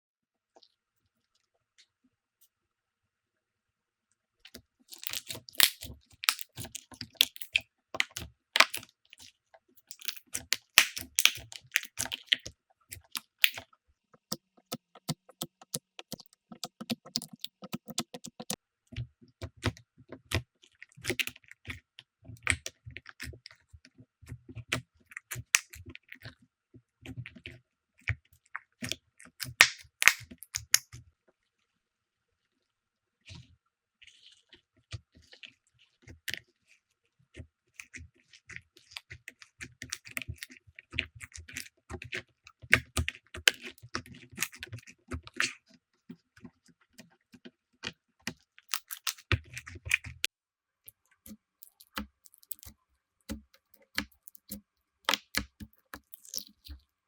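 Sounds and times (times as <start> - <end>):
slime squeezed by hand: 51.6 - 56.8.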